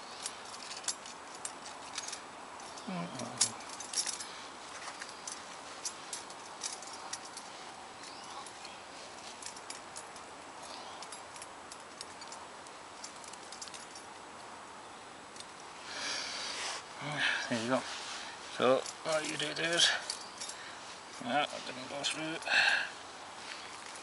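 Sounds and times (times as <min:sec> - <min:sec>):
steady hiss: 0:00.0 - 0:24.0.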